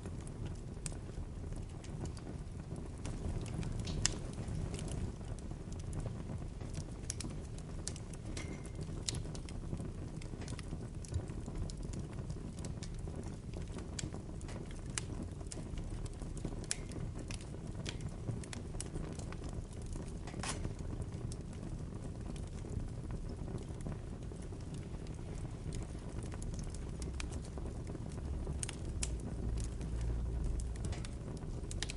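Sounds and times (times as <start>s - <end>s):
rumble of flames: 0.0s - 31.9s
wood crackling and popping: 0.0s - 31.9s.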